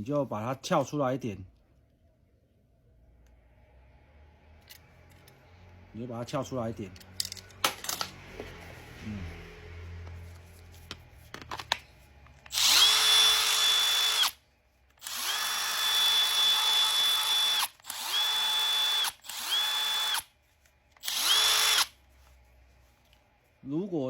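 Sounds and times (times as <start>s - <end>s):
power tool motor whining: 12.5s - 14.4s, 15.0s - 20.2s, 21.0s - 21.9s.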